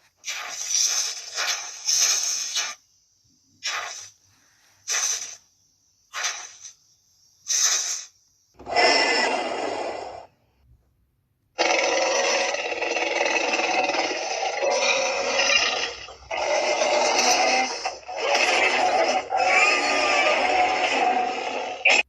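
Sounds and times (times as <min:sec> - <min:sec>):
dinosaur roaring and growling: 0:08.6 - 0:10.3, 0:11.6 - 0:22.0.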